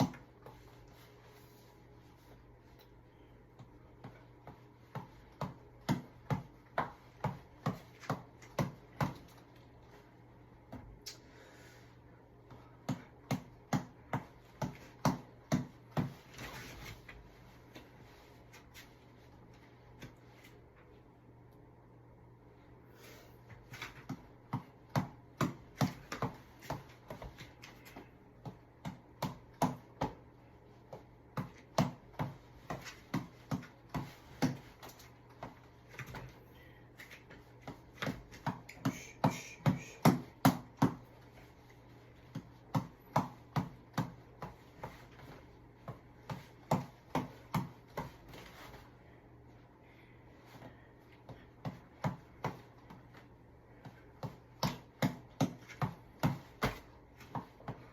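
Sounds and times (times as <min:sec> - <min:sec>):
reflex ball punches: 0:03.6 - 0:09.4, 0:12.8 - 0:16.4, 0:24.0 - 0:36.3, 0:37.6 - 0:41.2, 0:42.2 - 0:48.5, 0:53.8 - 0:57.9.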